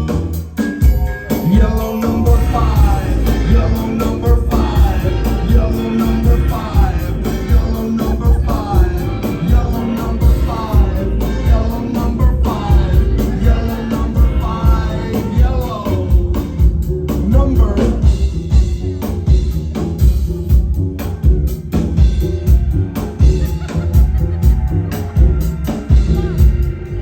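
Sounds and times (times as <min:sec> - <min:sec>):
driving drum beat: 0:00.0 - 0:27.0
heavy bass: 0:00.0 - 0:27.0
rock band playing: 0:00.0 - 0:27.0
wavering melodic line: 0:00.8 - 0:16.2.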